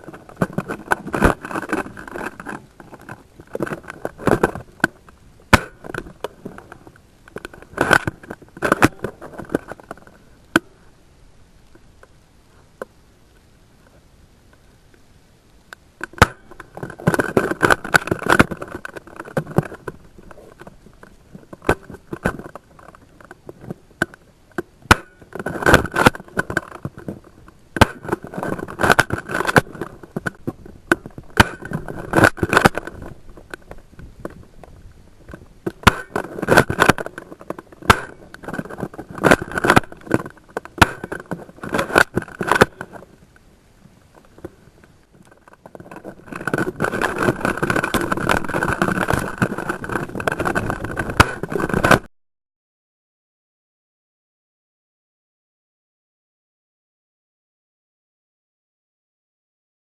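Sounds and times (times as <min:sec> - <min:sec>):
crackling and scraping bursts: 0:00.0 - 0:52.1.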